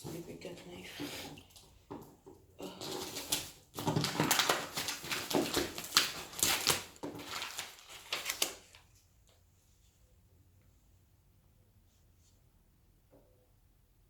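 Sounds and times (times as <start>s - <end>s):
knife ripping parcel wrapping: 2.6s - 8.8s.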